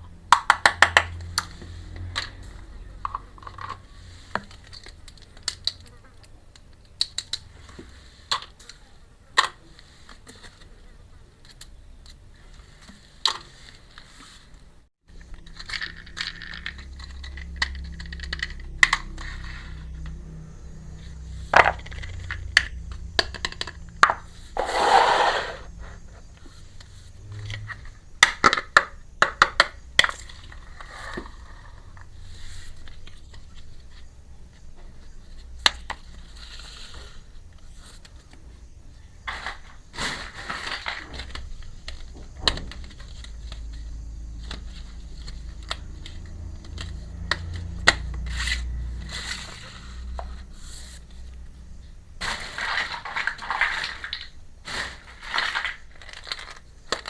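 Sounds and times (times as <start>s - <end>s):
small toy pieces clicking: 15.4s - 19.2s
scraping rustle: 24.4s - 28.0s.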